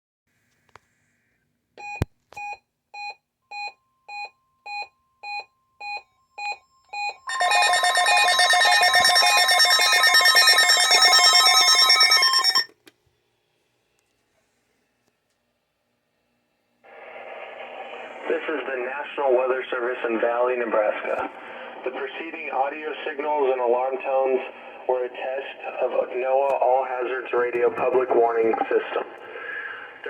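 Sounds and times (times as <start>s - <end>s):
pulsing alarm tone: 7.3s - 12.7s.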